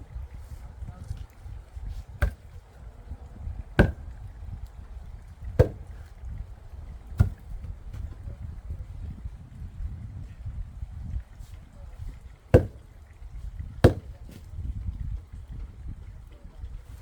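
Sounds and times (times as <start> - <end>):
axe chopping firewood: 2.0 - 2.7, 3.7 - 4.2, 5.5 - 6.2, 7.1 - 8.2, 12.5 - 12.9, 13.8 - 14.5.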